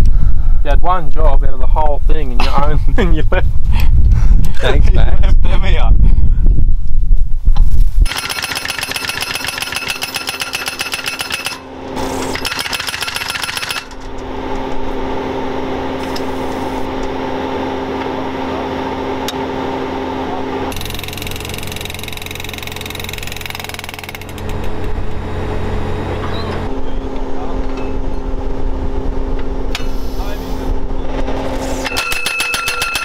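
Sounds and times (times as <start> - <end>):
engine and hydraulics running: 7.6 - 33.0
post driver hammer strikes: 8.1 - 14.0, 31.8 - 33.0.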